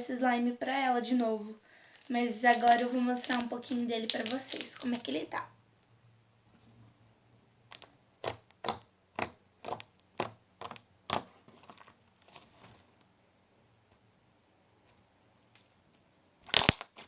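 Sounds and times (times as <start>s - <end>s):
brittle slime crackling: 1.9s - 5.4s, 16.4s - 17.0s.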